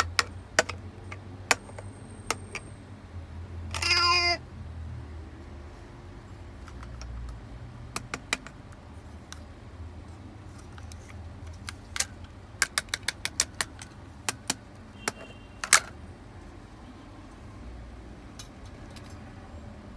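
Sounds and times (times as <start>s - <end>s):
plastic toy pieces clicking: 0.0s - 2.6s, 6.6s - 9.4s, 10.6s - 16.0s.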